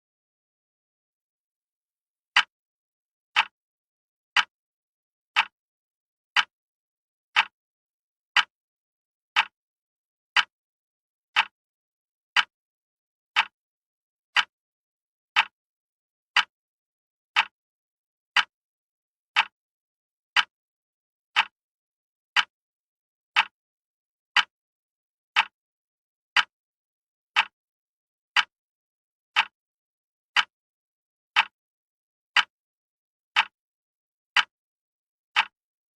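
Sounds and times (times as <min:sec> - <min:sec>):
wall clock ticking: 0:02.3 - 0:02.5, 0:03.4 - 0:03.6, 0:04.3 - 0:04.6, 0:05.3 - 0:05.6, 0:06.3 - 0:06.6, 0:07.3 - 0:07.6, 0:08.3 - 0:08.6, 0:09.3 - 0:09.6, 0:10.3 - 0:10.6, 0:11.4 - 0:11.6, 0:12.3 - 0:12.6, 0:13.3 - 0:13.6, 0:15.3 - 0:15.6, 0:17.4 - 0:17.6, 0:18.4 - 0:18.6, 0:19.4 - 0:19.6, 0:20.4 - 0:20.6, 0:21.4 - 0:21.6, 0:22.3 - 0:22.5, 0:23.3 - 0:23.6, 0:24.4 - 0:24.6, 0:25.4 - 0:25.6, 0:26.4 - 0:26.6, 0:27.4 - 0:27.6, 0:28.3 - 0:28.6, 0:29.4 - 0:29.6, 0:30.4 - 0:30.6, 0:31.4 - 0:31.6, 0:32.4 - 0:32.6, 0:33.4 - 0:33.6, 0:34.4 - 0:34.6, 0:35.4 - 0:35.6.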